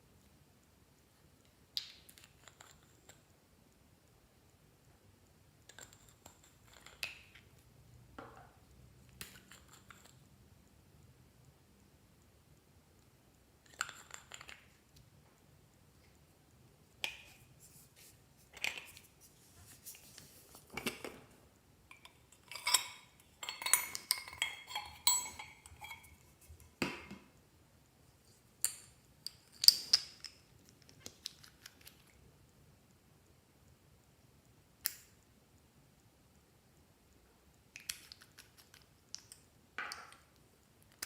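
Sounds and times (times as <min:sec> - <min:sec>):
small hard objects clinking: 0:21.9 - 0:26.6.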